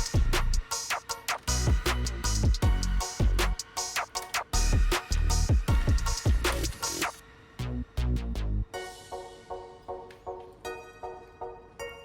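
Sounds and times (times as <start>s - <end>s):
plucked notes music: 8.7s - 12.0s.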